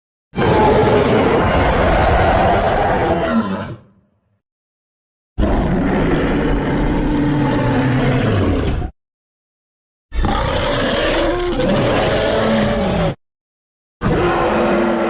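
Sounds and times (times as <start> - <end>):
low growling roar: 0.4 - 3.9, 5.4 - 8.9, 10.2 - 13.2, 14.0 - 15.0.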